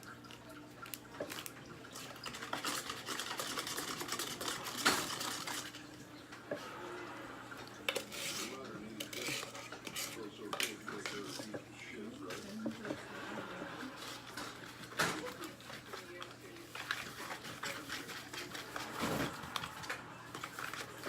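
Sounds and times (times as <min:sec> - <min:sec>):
utensil stirring slime in cup: 0:02.0 - 0:05.9, 0:07.9 - 0:13.0, 0:13.8 - 0:21.0.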